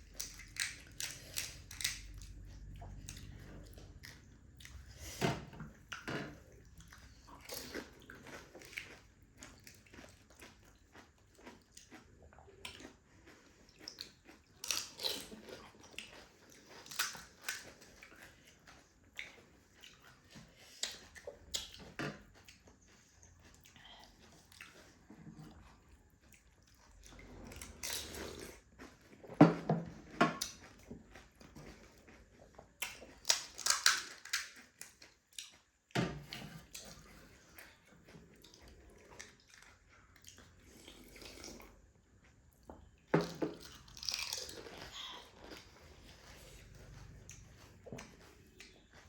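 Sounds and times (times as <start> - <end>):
crisp shells crunching and chewing: 0.0 - 5.0, 6.6 - 29.4, 30.4 - 35.8, 43.2 - 49.0.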